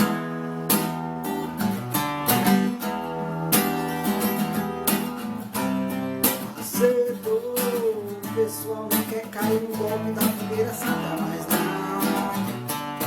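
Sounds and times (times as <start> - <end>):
acoustic guitar strumming: 0.0 - 13.0.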